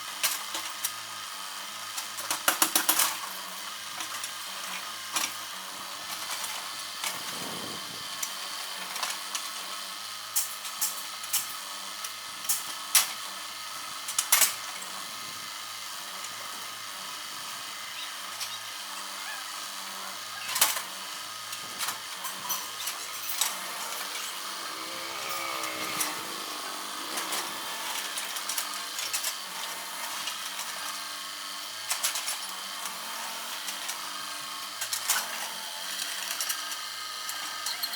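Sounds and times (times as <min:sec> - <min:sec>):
excavator running: 0:15.9 - 0:32.3.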